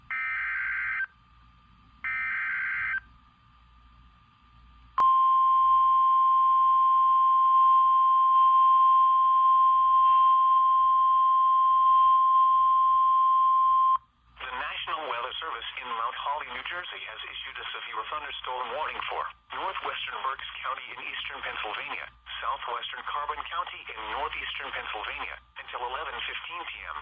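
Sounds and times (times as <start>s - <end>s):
steady warning alarm tone: 0.0s - 1.1s, 2.0s - 3.1s.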